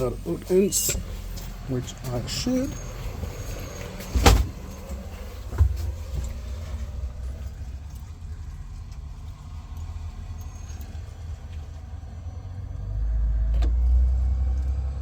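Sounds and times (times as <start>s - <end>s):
steady low rumble: 0.0s - 13.5s
loud thud: 4.1s - 4.6s.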